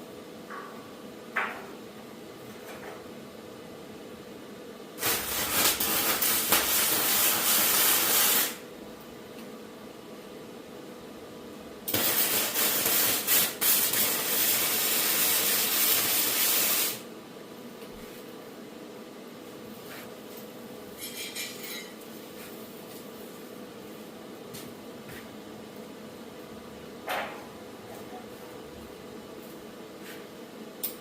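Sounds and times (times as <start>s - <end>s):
loud hissing bursts: 5.0s - 8.6s, 11.9s - 17.0s.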